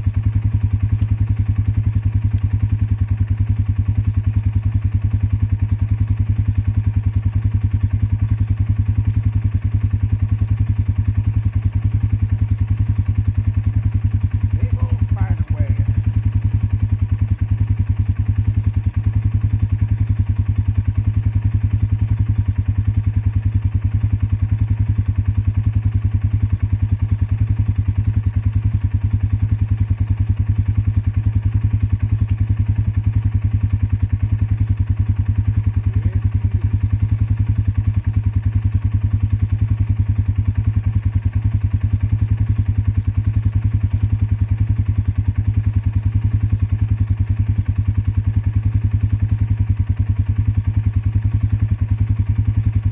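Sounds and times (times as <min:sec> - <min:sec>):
atv engine idling: 0:00.0 - 0:52.9
faint clicks: 0:32.2 - 0:33.0.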